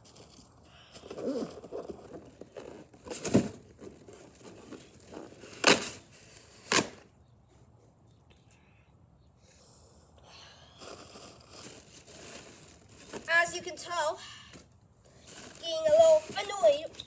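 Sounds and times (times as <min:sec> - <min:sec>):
packaging crinkling and rustling: 0:00.1 - 0:07.1, 0:10.8 - 0:13.8, 0:14.5 - 0:17.0
packaging ripping: 0:01.1 - 0:07.0, 0:11.0 - 0:13.3.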